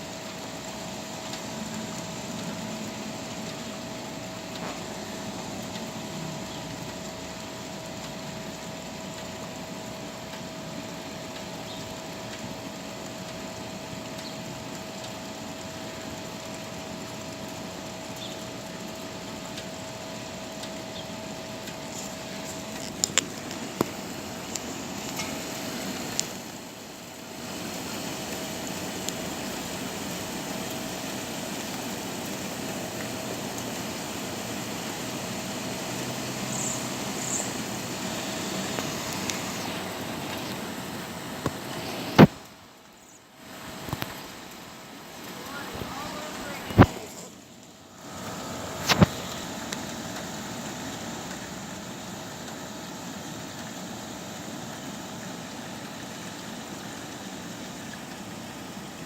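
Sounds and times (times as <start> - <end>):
storm rain hiss: 0.0 - 59.0
high bird chirps: 36.5 - 37.6.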